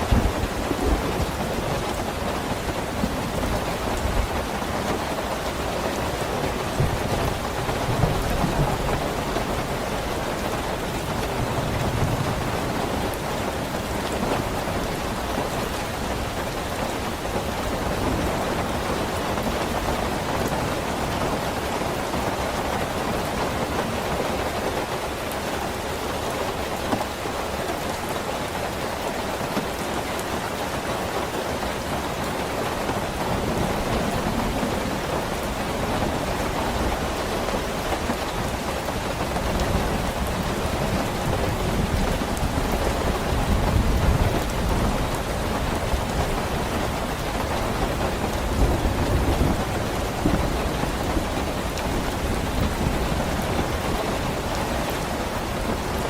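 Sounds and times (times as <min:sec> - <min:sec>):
deep thunder rumbling: 0:00.0 - 0:04.9
steady rain falling: 0:00.0 - 0:56.0.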